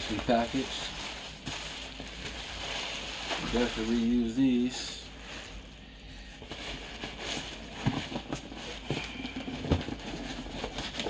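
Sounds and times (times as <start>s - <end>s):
cardboard packaging being opened: 6.3s - 11.0s.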